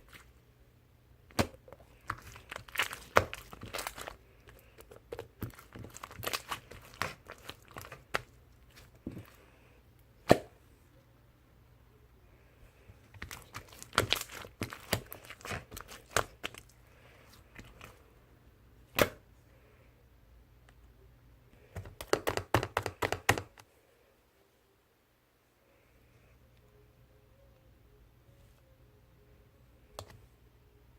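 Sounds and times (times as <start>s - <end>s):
slime squishing with sticky pops: 1.3s - 9.4s, 13.0s - 18.0s.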